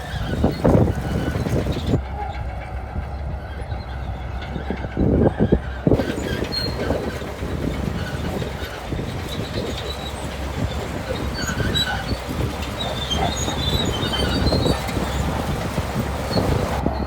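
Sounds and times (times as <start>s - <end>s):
bulldozer diesel engine running: 0.0s - 17.0s
steel tracks clattering: 0.0s - 17.0s.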